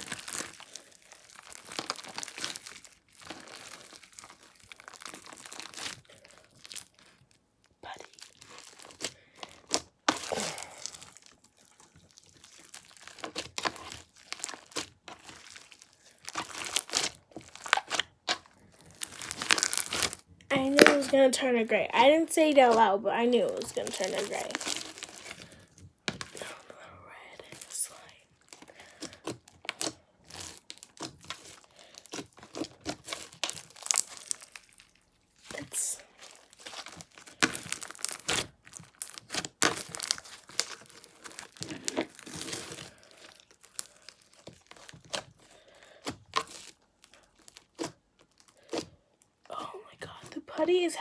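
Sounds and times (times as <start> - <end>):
slime squishing: 0.0 - 51.0
sticky pops and crackles: 8.3 - 21.4, 35.4 - 45.4.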